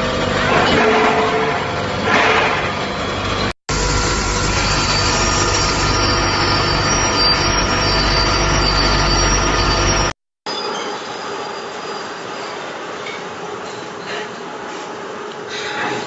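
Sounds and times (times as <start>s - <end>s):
loud mechanical noise: 0.0s - 10.2s
high-pitched squealing tones: 3.7s - 12.7s.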